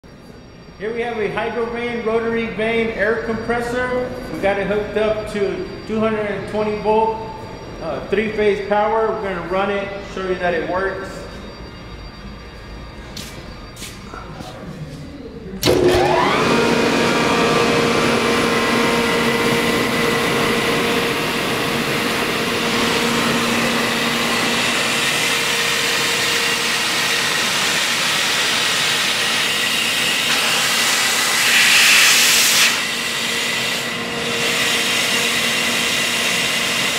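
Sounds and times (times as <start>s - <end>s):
air compressor running: 15.6s - 36.9s
compressor air hiss: 30.1s - 33.8s.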